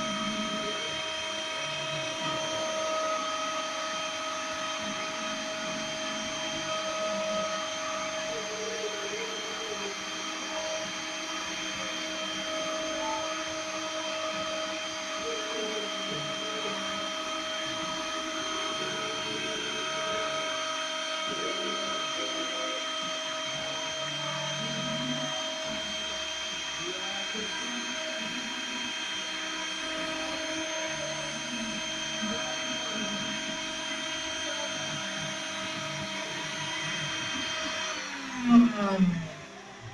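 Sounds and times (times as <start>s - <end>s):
milling spindle whine: 0.0s - 39.9s
stepper motors humming: 0.0s - 39.9s.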